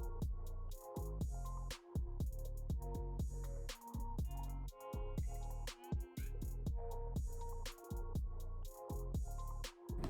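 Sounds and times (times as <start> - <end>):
deep kick drums: 0.0 - 10.0.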